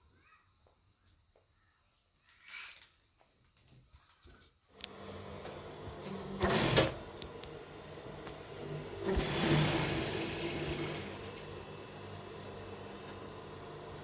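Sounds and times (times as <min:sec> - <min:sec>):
sewing machine stitching: 0:04.8 - 0:14.0.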